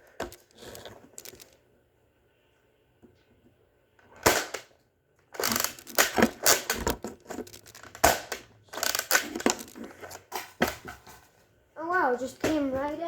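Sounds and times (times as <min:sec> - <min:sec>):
plastic handling clatter: 0:00.1 - 0:01.6, 0:05.4 - 0:11.4.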